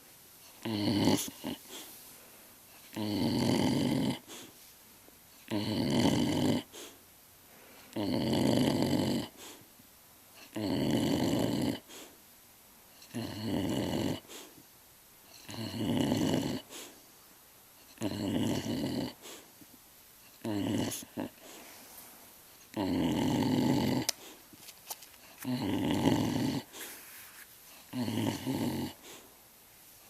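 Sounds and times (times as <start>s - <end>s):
dog snoring: 0.5s - 1.9s, 2.8s - 4.5s, 5.4s - 7.0s, 7.9s - 9.6s, 10.4s - 12.2s, 13.0s - 14.6s, 15.3s - 17.0s, 17.9s - 19.5s, 20.3s - 21.7s, 22.7s - 24.4s, 25.3s - 27.0s, 27.7s - 29.3s.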